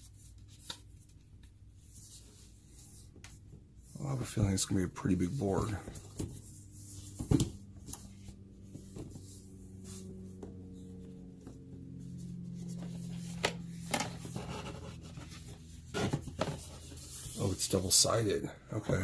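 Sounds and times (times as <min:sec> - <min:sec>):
faint low droning tones: 0:03.8 - 0:19.0
cardboard board rubbing and tapping: 0:13.4 - 0:17.4.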